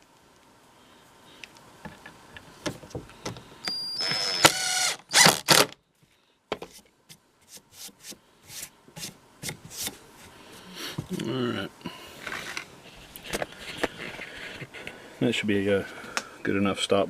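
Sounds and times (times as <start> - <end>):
cordless drill driving a screw: 4.0 - 5.8.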